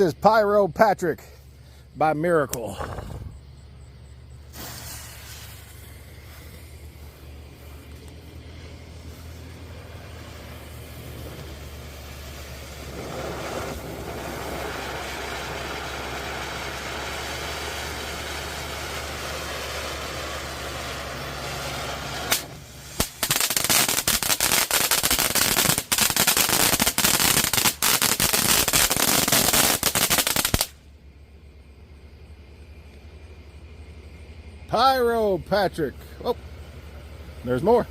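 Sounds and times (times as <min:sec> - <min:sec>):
low steady hum: 0:01.2 - 0:22.9, 0:30.8 - 0:37.9
firework fountain hissing spray: 0:04.3 - 0:30.8
firework rapid crackling pops: 0:04.4 - 0:30.8.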